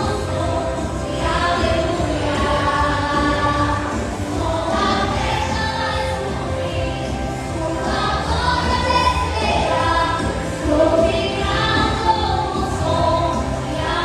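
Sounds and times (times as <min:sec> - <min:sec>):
choir singing gospel song: 0:00.0 - 0:14.0.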